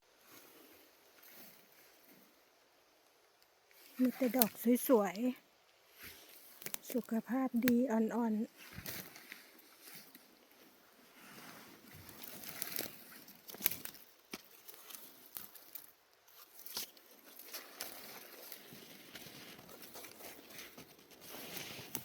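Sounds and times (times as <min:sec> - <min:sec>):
rustling forest-floor litter: 0:00.1 - 0:22.0
twigs snapping: 0:03.8 - 0:04.9, 0:06.2 - 0:07.9, 0:08.7 - 0:10.2, 0:11.8 - 0:22.0.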